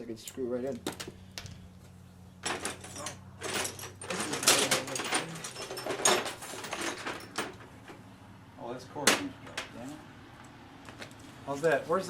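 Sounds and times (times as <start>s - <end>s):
metal tools clinking and rattling: 2.4s - 8.0s.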